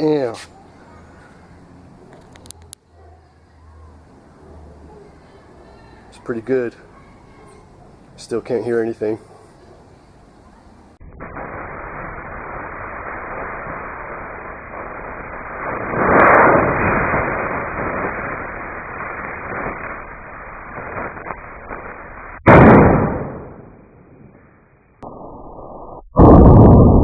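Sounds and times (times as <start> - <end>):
firecracker bang: 11.0 - 24.5.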